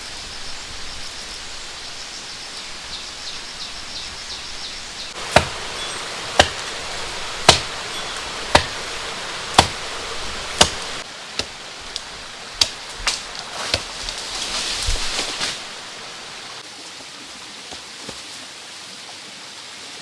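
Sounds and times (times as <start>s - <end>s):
steady rain-like noise: 0.0s - 17.5s
blade chopping: 5.2s - 15.9s.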